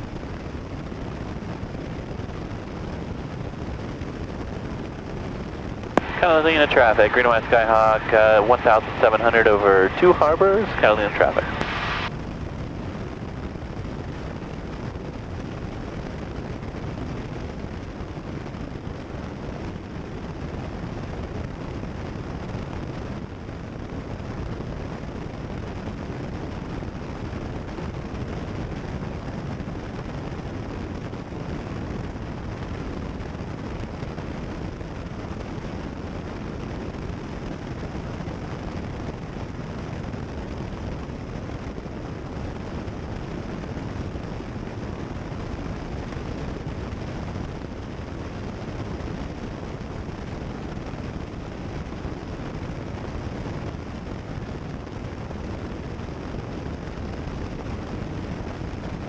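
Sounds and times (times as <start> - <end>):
airplane engine and propeller droning: 3.4 - 16.5.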